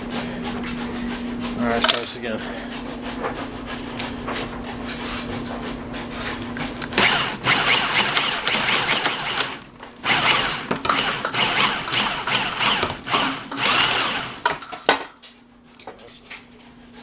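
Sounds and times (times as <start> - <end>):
power drill running: 6.9 - 14.7.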